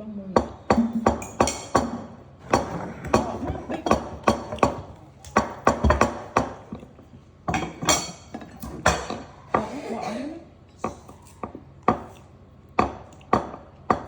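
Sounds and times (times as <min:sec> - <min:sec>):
kitchen utensils knocking on surface: 0:00.4 - 0:06.8.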